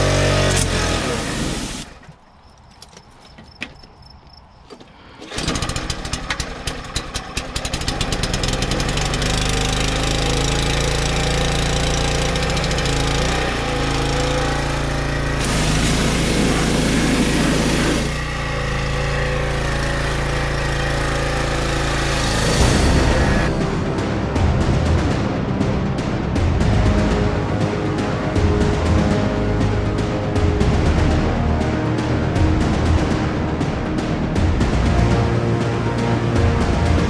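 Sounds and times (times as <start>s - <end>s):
pressure washer engine running: 0.0s - 2.0s, 5.2s - 25.2s.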